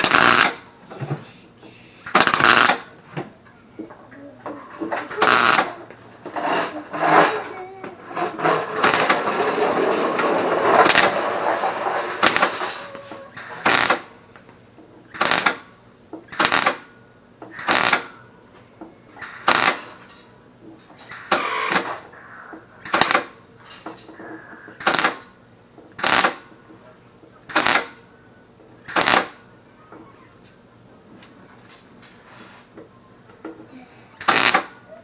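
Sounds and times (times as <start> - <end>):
short tack weld bursts: 0.0 - 0.6, 2.0 - 2.8, 5.1 - 5.7, 13.4 - 14.1, 15.1 - 15.6, 16.3 - 16.9, 17.6 - 18.1, 19.2 - 19.8, 26.0 - 26.4, 27.5 - 28.0, 34.2 - 34.7.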